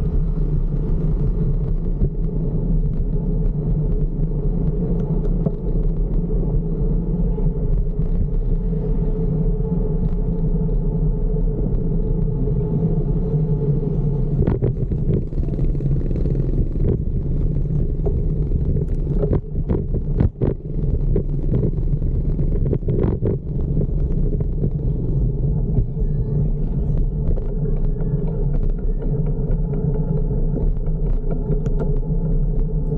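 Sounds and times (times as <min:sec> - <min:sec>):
rumble of wind and road: 0:00.0 - 0:32.9
sharp clicks and knocks: 0:27.2 - 0:32.9.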